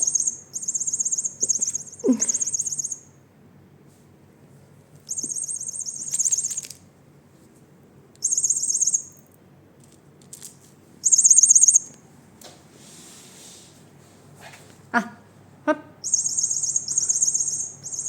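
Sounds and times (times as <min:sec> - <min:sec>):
toy mouse warbling chirp: 0:00.0 - 0:03.2, 0:05.1 - 0:06.8, 0:08.2 - 0:09.2, 0:11.0 - 0:12.0, 0:16.0 - 0:18.0.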